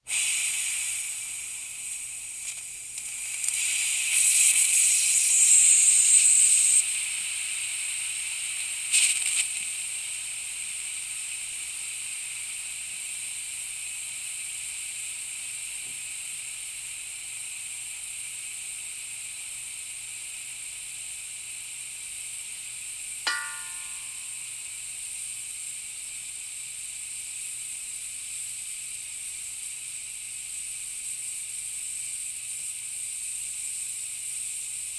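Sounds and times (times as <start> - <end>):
compressed air hissing: 0.0 - 34.9
high ringing tone: 23.3 - 24.3.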